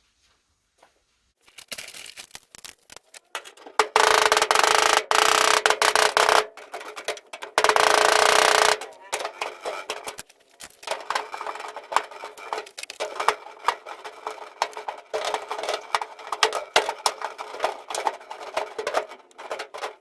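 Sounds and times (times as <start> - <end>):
metallic clicks and scrapes: 1.4 - 20.0
power tool cutting sheet metal: 3.8 - 6.6, 7.6 - 8.9.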